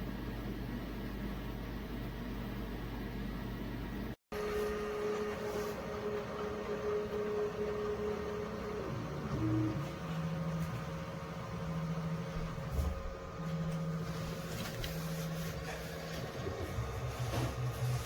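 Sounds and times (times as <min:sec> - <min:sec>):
whir of fans: 0:00.0 - 0:18.0
motor whine: 0:04.4 - 0:18.0.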